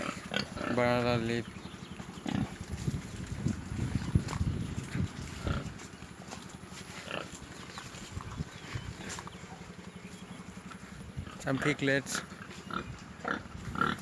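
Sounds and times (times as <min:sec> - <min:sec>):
pig calls: 0:00.0 - 0:02.7, 0:05.2 - 0:06.1, 0:06.8 - 0:09.8, 0:10.6 - 0:14.0
pigs munching leaves: 0:00.0 - 0:14.0.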